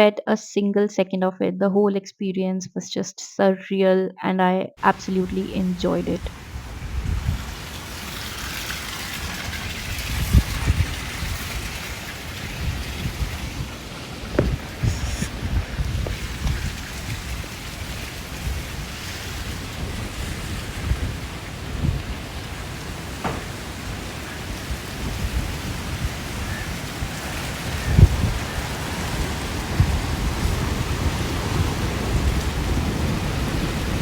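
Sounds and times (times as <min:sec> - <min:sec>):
heavy rain falling: 0:04.8 - 0:34.0
loud low thump: 0:14.3 - 0:14.8.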